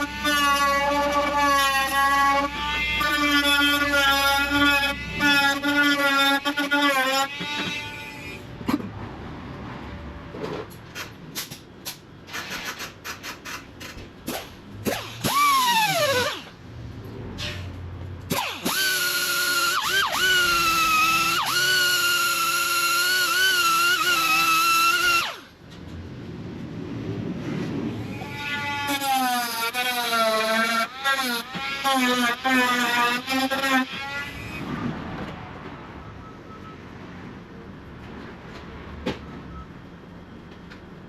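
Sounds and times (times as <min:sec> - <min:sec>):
power tool whining: 0:00.0 - 0:08.5, 0:14.3 - 0:16.6, 0:18.3 - 0:25.5, 0:28.0 - 0:34.7.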